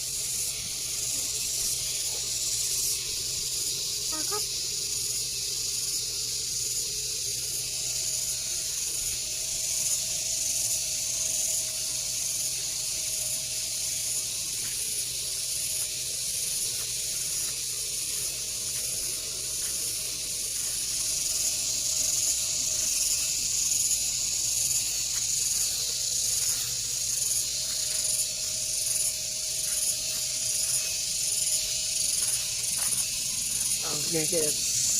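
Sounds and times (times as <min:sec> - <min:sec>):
high-pitched hiss of rice paddy: 0:00.0 - 0:34.9.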